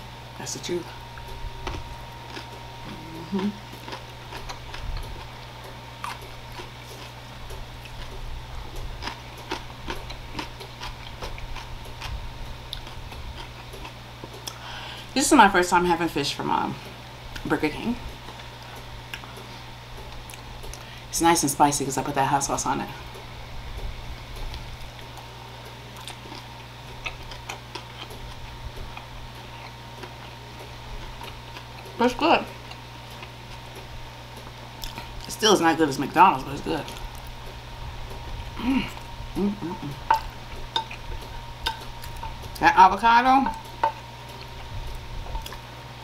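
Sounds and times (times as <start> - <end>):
steady low hum: 0.0 - 46.0
chewing with wet mouth clicks: 1.2 - 14.6, 25.9 - 35.3, 38.9 - 42.6, 43.5 - 45.7
wet chewing mouth clicks: 34.8 - 35.3.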